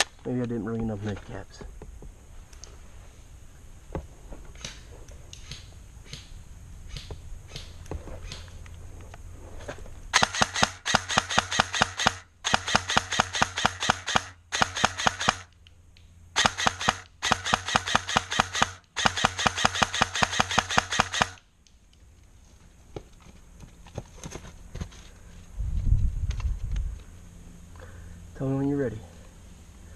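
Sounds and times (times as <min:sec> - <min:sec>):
airsoft gun automatic bursts: 0:10.1 - 0:15.5, 0:16.4 - 0:21.4.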